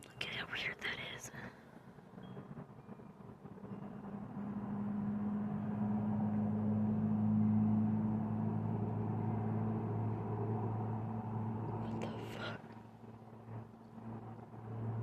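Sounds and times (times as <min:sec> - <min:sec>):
deep mechanical hum: 0:04.3 - 0:15.0.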